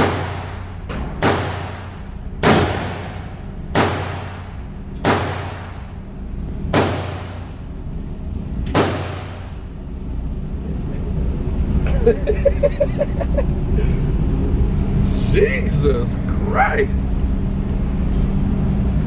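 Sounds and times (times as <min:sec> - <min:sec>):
gunshots echoing indoors: 0:00.0 - 0:07.8, 0:08.6 - 0:09.8.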